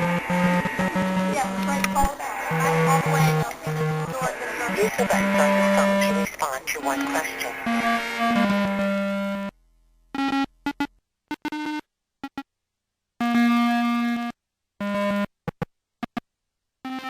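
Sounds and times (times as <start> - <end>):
buzzy electronic tone: 0.0 - 9.5.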